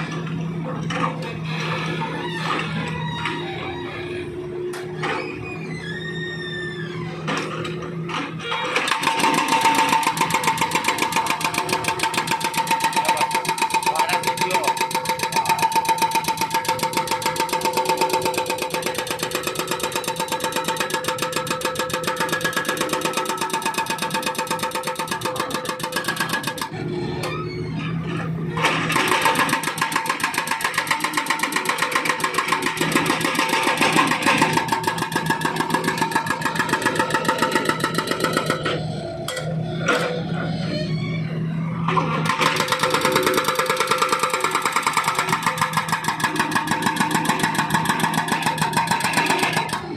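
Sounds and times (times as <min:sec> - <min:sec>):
excavator engine running: 0:06.9 - 0:49.9
hydraulic breaker hammering asphalt: 0:08.7 - 0:26.8, 0:28.6 - 0:39.0, 0:42.2 - 0:49.9.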